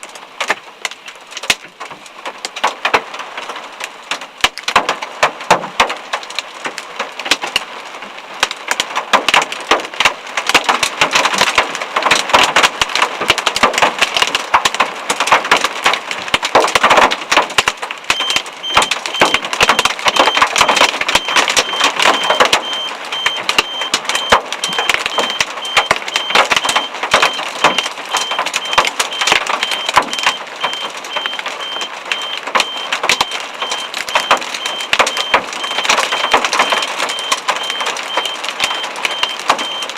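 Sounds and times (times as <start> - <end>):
hailstones pelting down: 0.0 - 39.9
electronic alarm beeping: 18.1 - 39.9.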